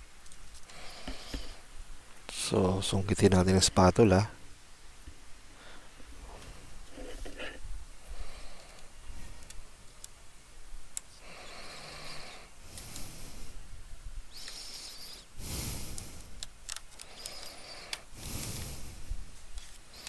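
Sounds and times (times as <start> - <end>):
plastic clips snapping: 15.9 - 18.1.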